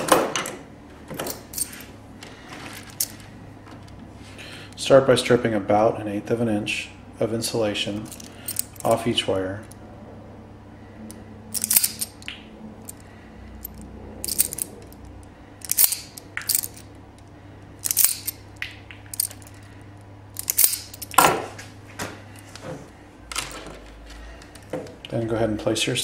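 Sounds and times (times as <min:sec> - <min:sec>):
wire strippers snipping: 0:17.8 - 0:19.5, 0:20.4 - 0:21.3.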